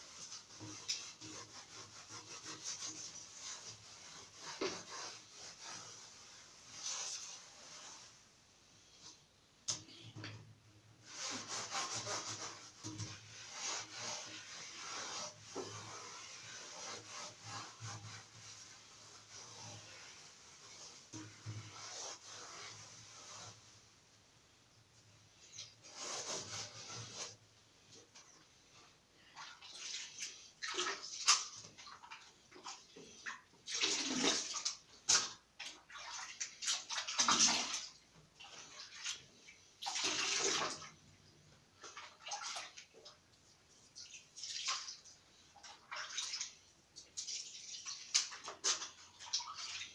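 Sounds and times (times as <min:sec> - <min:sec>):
scrubbing plastic fan grille: 0:00.0 - 0:08.2, 0:11.0 - 0:23.8.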